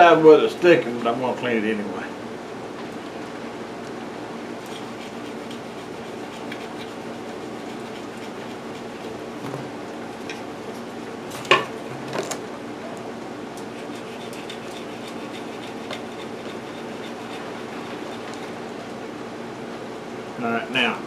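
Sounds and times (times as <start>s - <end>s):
steady low hum: 0.0s - 21.0s
pad rubbing and scraping metal: 4.6s - 9.7s, 13.7s - 18.6s.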